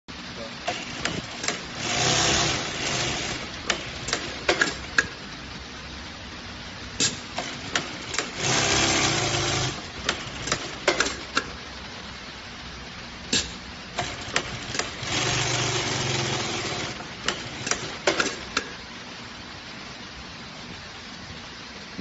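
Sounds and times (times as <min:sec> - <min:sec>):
sewing machine running: 0:00.6 - 0:05.0, 0:07.3 - 0:11.5, 0:14.0 - 0:18.6
sharp clicks and knocks: 0:00.7 - 0:01.7, 0:03.6 - 0:05.2, 0:07.0 - 0:08.4, 0:10.0 - 0:11.6, 0:13.3 - 0:15.0, 0:17.2 - 0:18.8.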